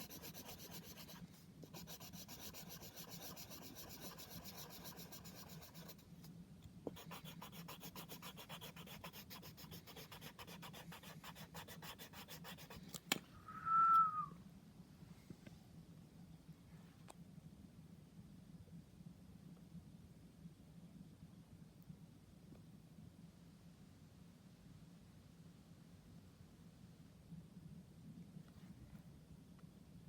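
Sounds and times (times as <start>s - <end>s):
pencil shading on paper: 0.0s - 6.1s, 6.9s - 12.8s.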